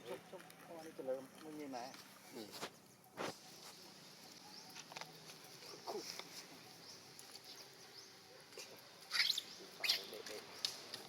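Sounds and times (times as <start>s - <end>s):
faint animal squeaks: 9.0s - 10.2s.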